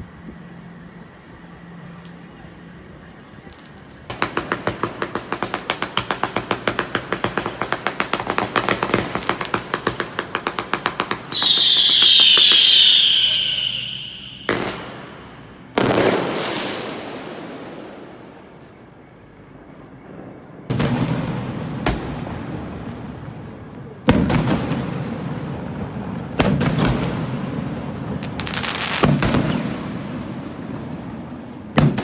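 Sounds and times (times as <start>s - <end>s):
firework bangs: 4.1s - 19.0s, 20.2s - 32.0s
firework whistling shriek: 8.4s - 17.5s, 28.3s - 29.7s
firecracker pops: 28.2s - 29.8s.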